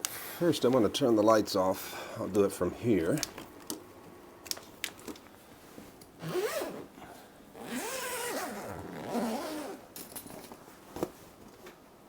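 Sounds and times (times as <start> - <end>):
zipper being unzipped: 6.2 - 6.9, 7.6 - 9.8.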